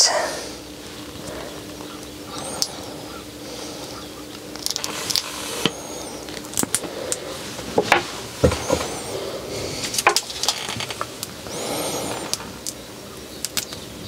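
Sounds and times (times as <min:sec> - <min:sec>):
light rustling with squeaks: 0:03.9 - 0:12.6.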